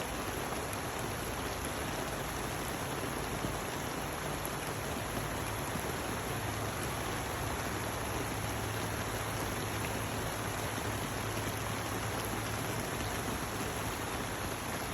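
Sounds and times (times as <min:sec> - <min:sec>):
steady rain falling: 0:00.0 - 0:14.9.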